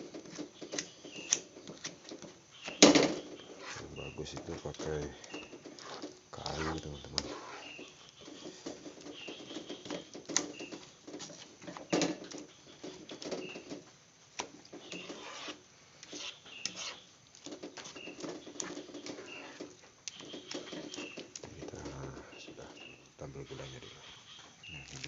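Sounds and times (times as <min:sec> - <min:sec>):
spatula scraping in a pan: 0:03.4 - 0:04.0, 0:05.2 - 0:11.6, 0:14.8 - 0:17.1, 0:17.8 - 0:21.2.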